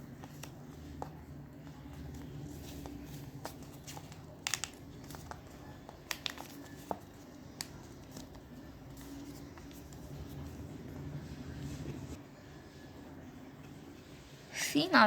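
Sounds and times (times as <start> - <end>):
paper rustling and crinkling: 0.0 - 10.9
sharp paper crackles: 2.2 - 10.2.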